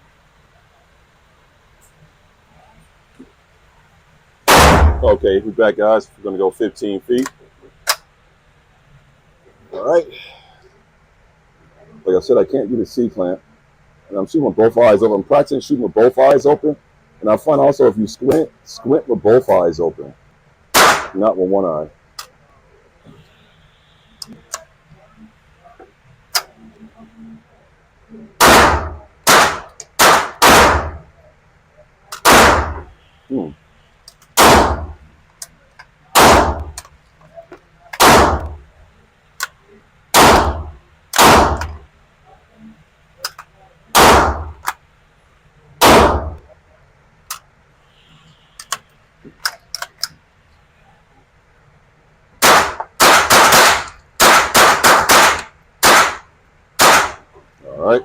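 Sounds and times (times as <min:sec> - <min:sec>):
rifle shots: 0:04.5 - 0:05.3, 0:20.7 - 0:21.2, 0:28.4 - 0:31.0, 0:32.2 - 0:32.9, 0:34.4 - 0:35.0, 0:36.2 - 0:36.8, 0:38.0 - 0:38.6, 0:40.2 - 0:41.8, 0:43.9 - 0:44.7, 0:45.8 - 0:46.4, 0:52.4 - 0:56.2, 0:56.8 - 0:57.2.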